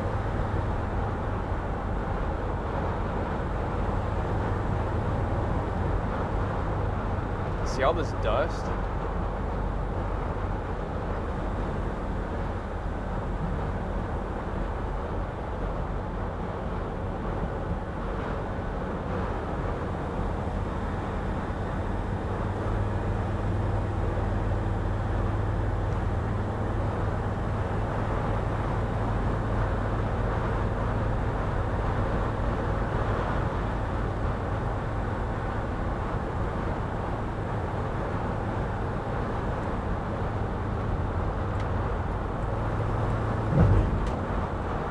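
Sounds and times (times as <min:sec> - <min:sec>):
road and wind noise in van cab: 0:00.0 - 0:44.9
low hum: 0:42.1 - 0:44.5.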